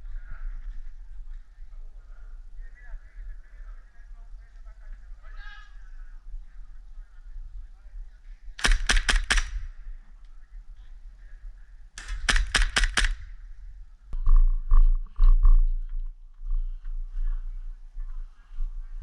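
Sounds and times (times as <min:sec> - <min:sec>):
airsoft gun shots: 0:08.6 - 0:09.7, 0:12.0 - 0:13.4.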